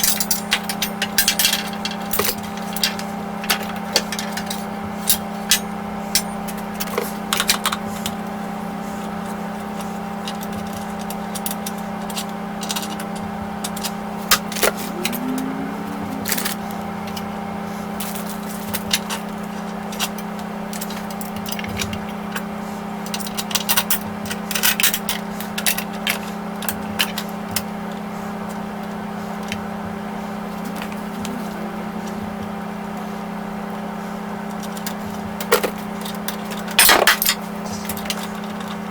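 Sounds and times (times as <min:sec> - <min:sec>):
steady low hum: 0:14.4 - 0:18.7, 0:30.0 - 0:34.1.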